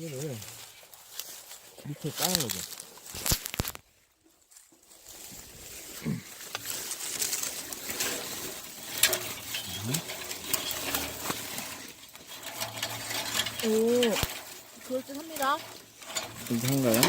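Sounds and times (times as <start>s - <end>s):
dry grass and twigs rustling: 0.0s - 17.0s.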